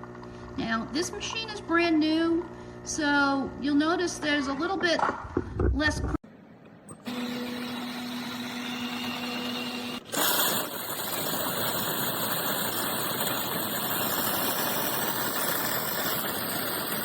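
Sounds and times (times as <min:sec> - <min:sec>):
coffee machine humming: 0:06.9 - 0:17.0
coffee machine whirring: 0:06.9 - 0:17.0.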